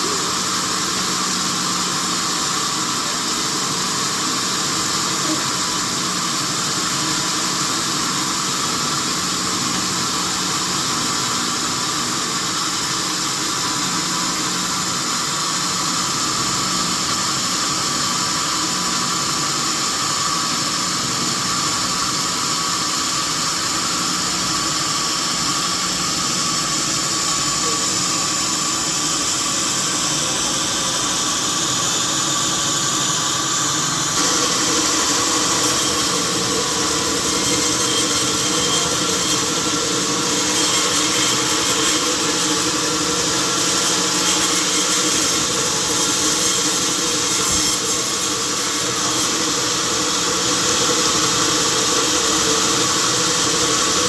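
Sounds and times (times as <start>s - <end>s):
sawmill machinery whining: 25.7s - 54.0s.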